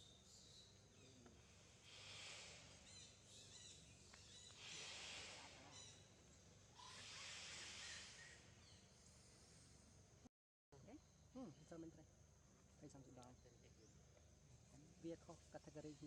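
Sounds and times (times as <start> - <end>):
high hiss: 1.3 - 9.9.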